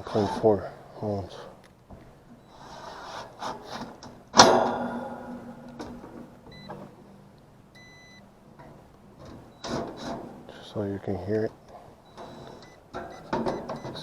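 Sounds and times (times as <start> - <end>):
loud metallic clank: 4.4 - 6.4
multimeter continuity beeps: 6.5 - 6.8, 7.8 - 8.3, 12.0 - 14.0.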